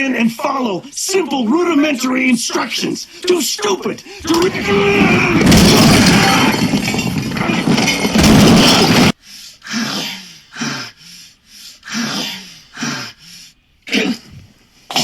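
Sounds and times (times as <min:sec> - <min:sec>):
loud rough noise: 0:04.2 - 0:09.2.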